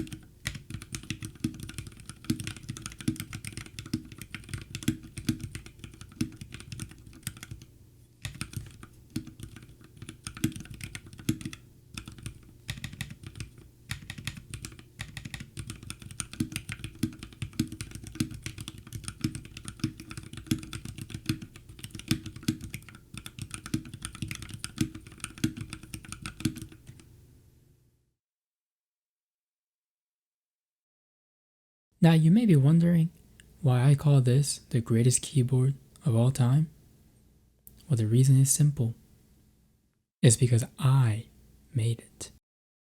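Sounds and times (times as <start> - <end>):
fast typing on mechanical keyboard: 0.0 - 27.0.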